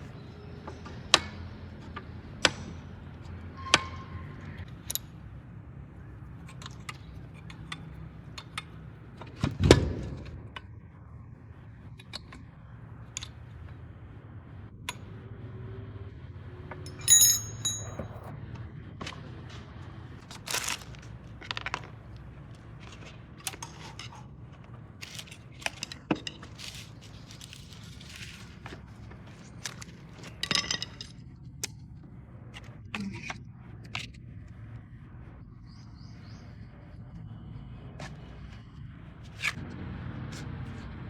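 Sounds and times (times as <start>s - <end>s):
metal tools clinking: 16.9s - 18.2s.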